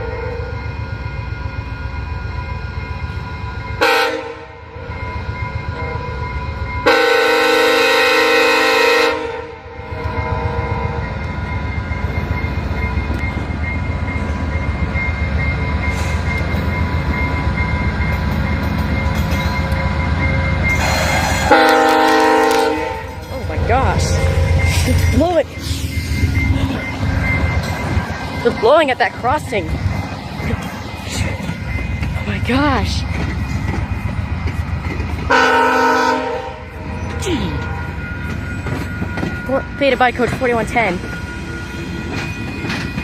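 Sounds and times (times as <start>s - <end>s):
train low rumble: 0.0s - 43.0s
locomotive air horn blasts: 3.8s - 4.5s, 6.8s - 9.6s, 20.8s - 23.1s, 35.3s - 36.7s.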